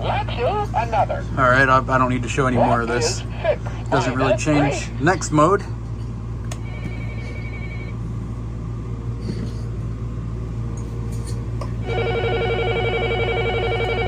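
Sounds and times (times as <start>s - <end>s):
steady low hum: 0.0s - 14.0s
toy phone trilling ring: 6.7s - 7.9s.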